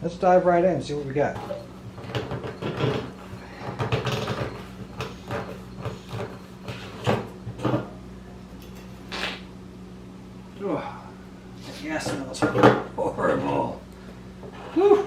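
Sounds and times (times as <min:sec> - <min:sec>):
steady low hum: 0:00.0 - 0:15.0
hands handling a generator: 0:01.4 - 0:07.9.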